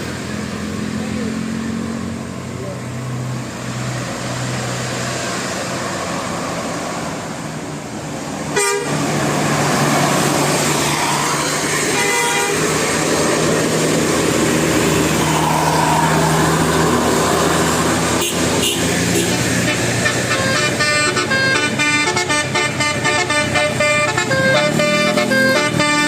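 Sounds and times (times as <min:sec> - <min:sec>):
bus engine running: 0:00.0 - 0:26.0
multi-tone bus horn tooting: 0:08.5 - 0:09.5, 0:10.5 - 0:13.5, 0:17.8 - 0:26.0.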